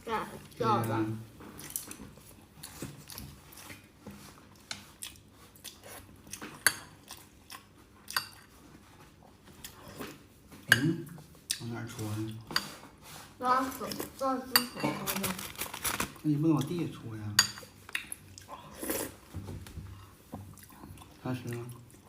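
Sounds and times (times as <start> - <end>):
chewing: 1.5 - 8.6, 17.8 - 19.2, 19.9 - 22.0
utensils clinking against bowls: 14.5 - 15.2.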